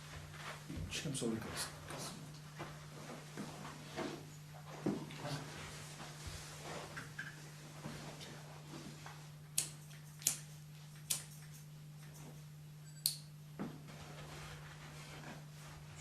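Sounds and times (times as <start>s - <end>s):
low electrical hum: 0.0s - 16.0s
scissors snipping: 9.6s - 12.2s.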